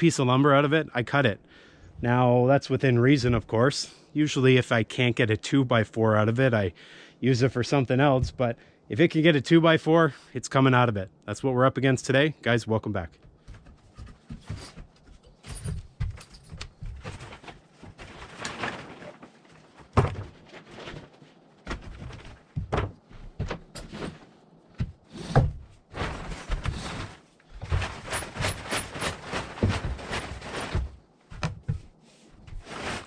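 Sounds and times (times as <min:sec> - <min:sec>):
knocks and thuds: 0:13.3 - 0:18.9, 0:19.8 - 0:20.4, 0:21.6 - 0:33.0
plastic tarp rustling and crinkling: 0:15.4 - 0:24.4, 0:25.2 - 0:31.1, 0:32.4 - 0:33.0.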